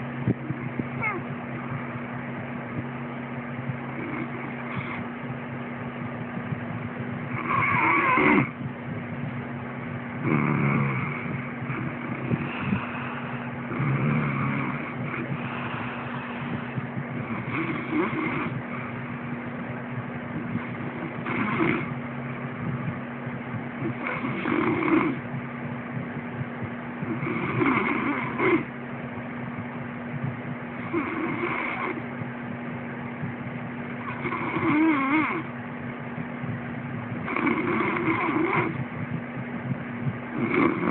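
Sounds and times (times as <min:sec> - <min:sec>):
steady low hum: 0:00.0 - 0:40.9
person snoring loudly: 0:00.6 - 0:01.2, 0:07.3 - 0:08.6, 0:10.2 - 0:18.6, 0:20.6 - 0:22.0, 0:23.8 - 0:25.2, 0:27.1 - 0:28.7, 0:30.8 - 0:32.0, 0:34.0 - 0:35.5, 0:37.3 - 0:38.8, 0:40.4 - 0:40.9.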